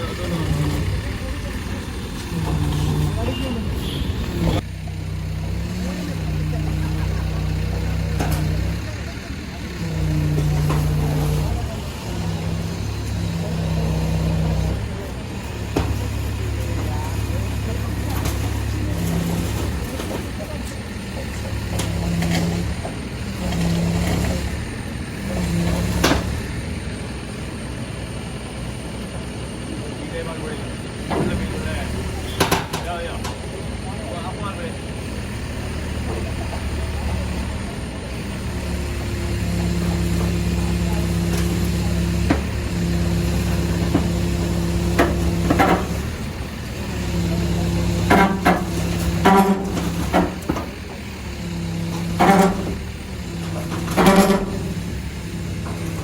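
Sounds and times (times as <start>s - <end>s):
heavy vehicle engine rumbling: 0.0s - 56.0s
sharp knocks and clatters: 47.0s - 50.8s, 51.4s - 56.0s.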